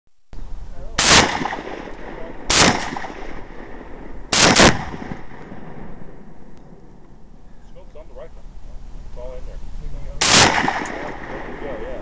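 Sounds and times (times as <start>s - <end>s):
gunshots with echo: 1.0s - 6.3s, 10.2s - 12.0s.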